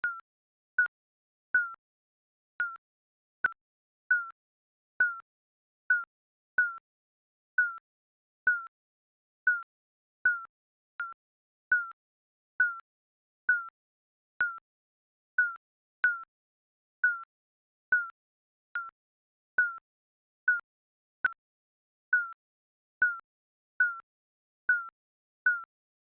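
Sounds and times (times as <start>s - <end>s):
electronic timer beeps: 0.0s - 0.2s, 2.6s - 2.8s, 3.4s - 4.4s, 7.6s - 7.8s, 10.3s - 12.0s, 13.5s - 13.8s, 14.4s - 14.6s, 18.8s - 19.0s, 19.6s - 19.8s, 22.1s - 22.4s.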